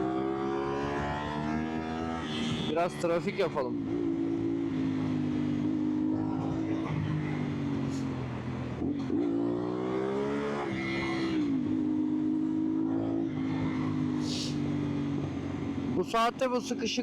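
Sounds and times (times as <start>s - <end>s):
motorcycle engine revving: 0.0s - 16.8s.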